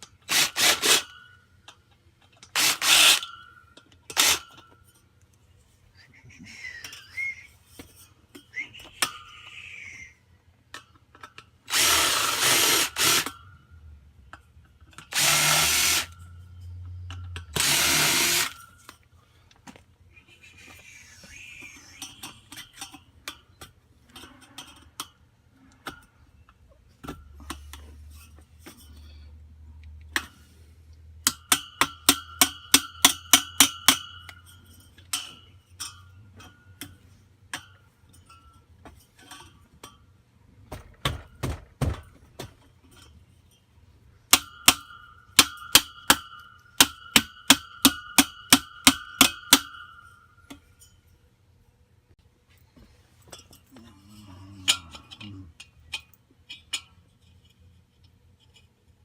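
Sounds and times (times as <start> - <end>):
hammer striking metal: 31.2 - 34.5, 44.3 - 50.7.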